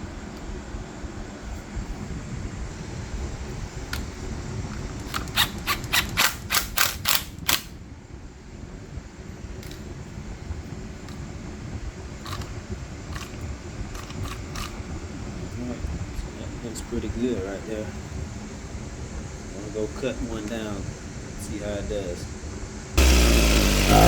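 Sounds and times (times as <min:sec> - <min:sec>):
steady low hum: 0:00.0 - 0:06.0, 0:07.4 - 0:24.0
sharp chain clicks: 0:05.1 - 0:07.7.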